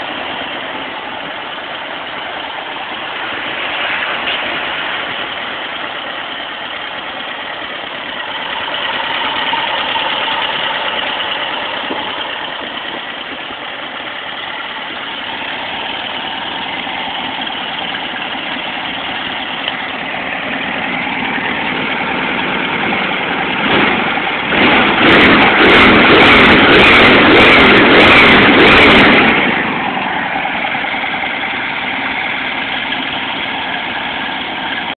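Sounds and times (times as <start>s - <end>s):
car engine idling and revving: 0.0s - 35.0s.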